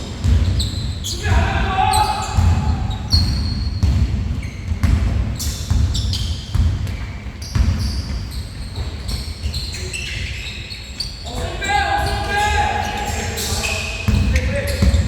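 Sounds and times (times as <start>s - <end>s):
basketball bouncing on court: 0.0s - 10.4s, 14.0s - 15.0s
shoe squeaks: 0.4s - 1.3s, 1.9s - 15.0s.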